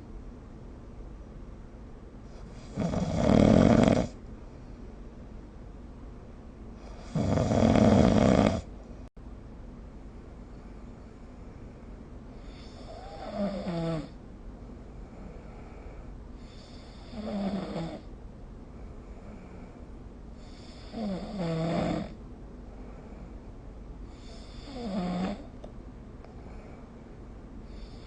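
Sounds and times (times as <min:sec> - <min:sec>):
steady background hiss: 0:00.0 - 0:28.0
person snoring: 0:02.6 - 0:04.2, 0:06.8 - 0:08.7, 0:12.4 - 0:14.2, 0:16.4 - 0:18.1, 0:20.4 - 0:22.2, 0:24.1 - 0:25.5.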